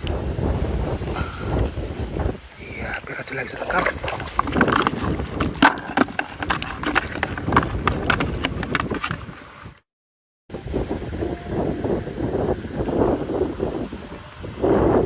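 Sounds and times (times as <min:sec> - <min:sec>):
wind buffeting microphone: 0:00.0 - 0:09.8, 0:10.5 - 0:15.0
handling knocks and rattles: 0:03.5 - 0:09.5.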